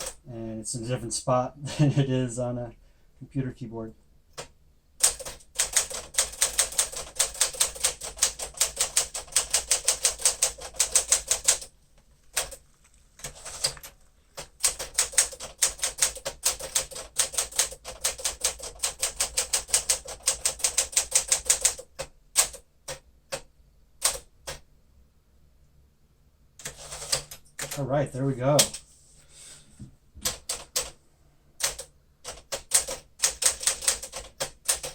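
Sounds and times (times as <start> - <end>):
manual typewriter keystrokes: 4.4 - 11.7, 12.3 - 12.6, 13.2 - 24.6, 26.6 - 27.8, 28.6 - 28.8, 30.2 - 31.0, 31.6 - 34.9.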